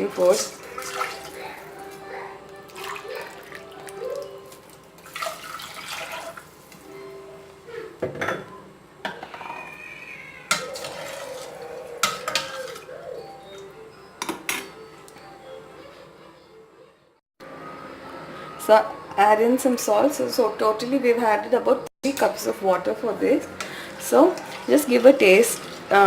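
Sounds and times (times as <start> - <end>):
water pouring into a pan: 0.6 - 1.4, 5.0 - 6.7, 10.8 - 11.5.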